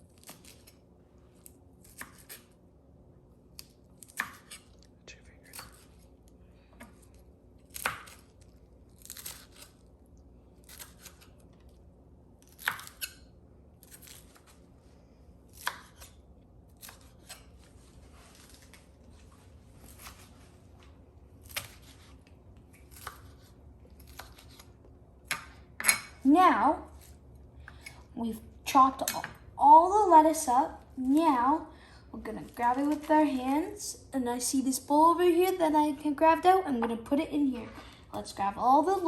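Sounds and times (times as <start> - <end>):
knife chopping lettuce: 0.1 - 0.8, 1.8 - 2.5, 3.6 - 4.7, 6.8 - 9.8, 10.6 - 11.4, 12.4 - 13.2, 15.5 - 17.7, 21.4 - 26.1.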